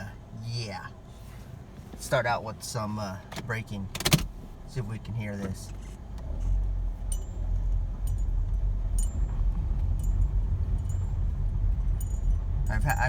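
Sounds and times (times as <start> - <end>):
car rumble from inside cabin: 0.0 - 13.0
light metallic clinks: 7.0 - 13.0.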